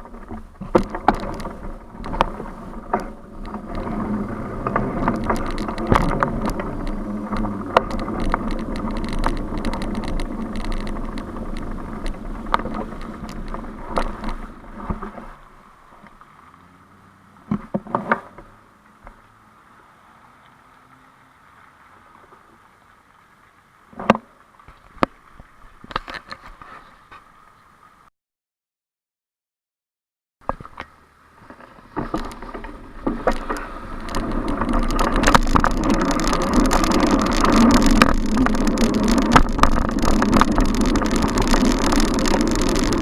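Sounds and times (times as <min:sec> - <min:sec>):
rattling knocks over bumps: 0:00.0 - 0:15.4, 0:31.5 - 0:43.0
bicycle road noise: 0:00.0 - 0:28.1, 0:30.4 - 0:43.0.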